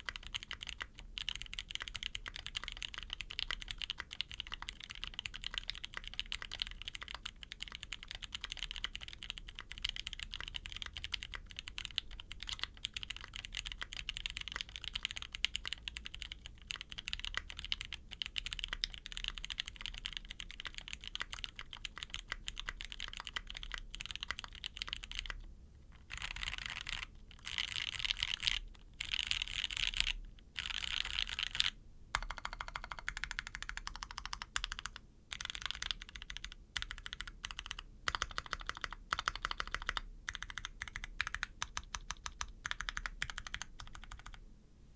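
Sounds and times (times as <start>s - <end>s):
mechanical keyboard typing: 0.0s - 44.4s.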